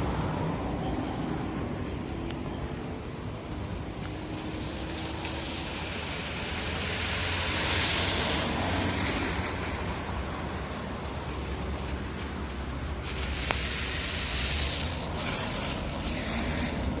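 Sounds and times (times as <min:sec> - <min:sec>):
road traffic engine hum: 0:00.0 - 0:17.0
tyre hiss: 0:04.0 - 0:10.7, 0:12.1 - 0:17.0.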